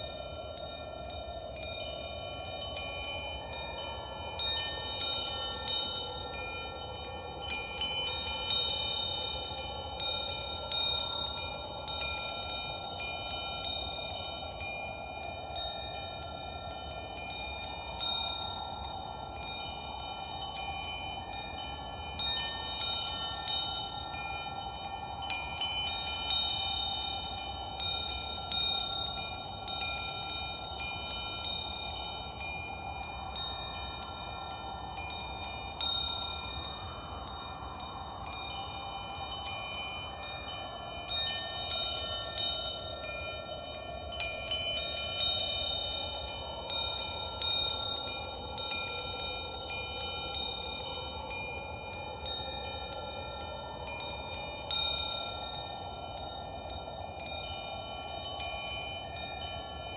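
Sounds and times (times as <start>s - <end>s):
wind chimes ringing: 0.0s - 59.9s.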